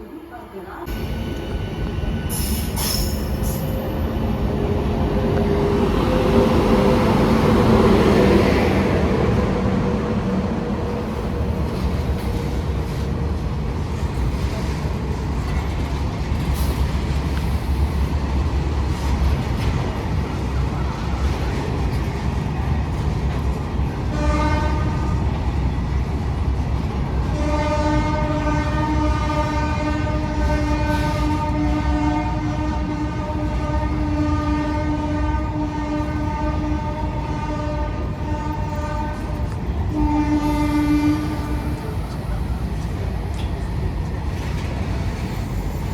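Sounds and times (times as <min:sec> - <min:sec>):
train rumbling over rails: 0:00.0 - 0:45.9
locomotive horn blasts: 0:24.1 - 0:25.2, 0:27.3 - 0:41.7.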